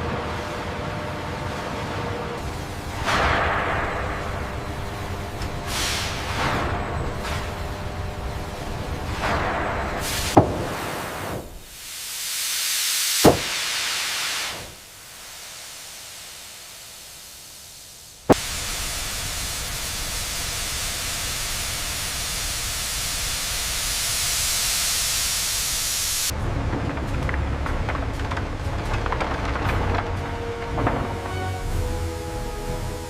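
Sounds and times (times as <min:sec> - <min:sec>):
steady hissing noise: 0:02.4 - 0:26.4, 0:30.9 - 0:33.0.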